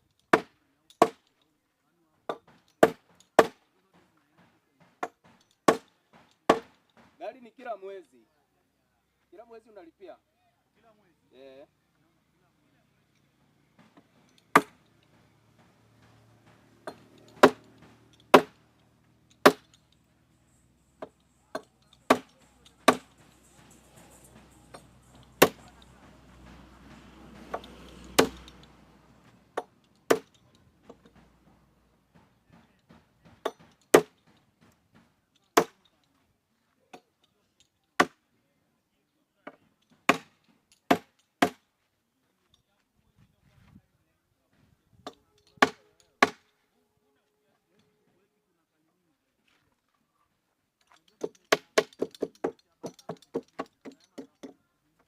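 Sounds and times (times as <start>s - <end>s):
hammer striking wood: 0.3s - 1.3s, 2.3s - 3.6s, 4.8s - 7.2s, 13.8s - 35.8s, 38.0s - 38.2s, 39.5s - 41.6s, 45.0s - 46.5s, 51.2s - 54.6s.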